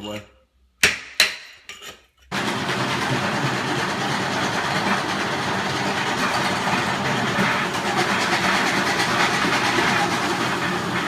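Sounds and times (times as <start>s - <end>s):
floor grinding machine: 2.3s - 11.0s.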